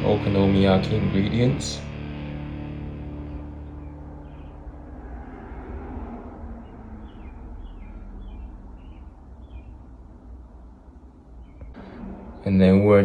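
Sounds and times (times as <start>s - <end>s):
small bird chirping: 3.6s - 4.8s, 6.6s - 10.0s, 10.6s - 12.4s.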